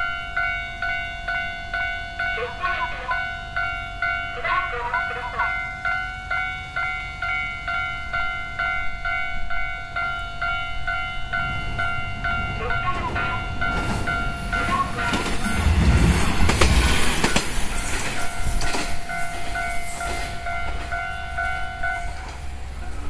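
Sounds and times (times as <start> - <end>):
train rumble: 0.0 - 23.0
level crossing bell ringing: 10.0 - 22.1.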